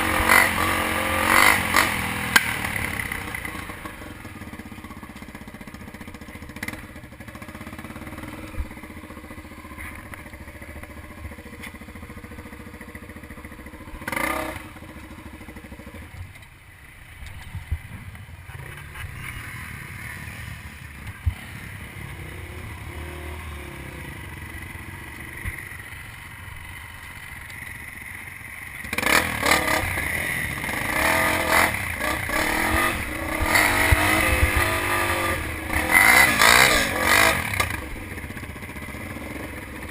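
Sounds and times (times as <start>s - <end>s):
dirt bike engine revving: 0.0s - 4.3s, 12.0s - 15.7s, 18.5s - 25.8s, 28.8s - 39.9s.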